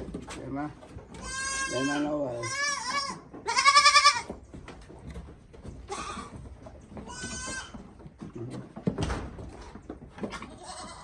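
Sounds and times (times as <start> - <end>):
goats bleating: 1.1 - 4.3, 5.9 - 6.3, 7.0 - 7.8, 10.5 - 11.0.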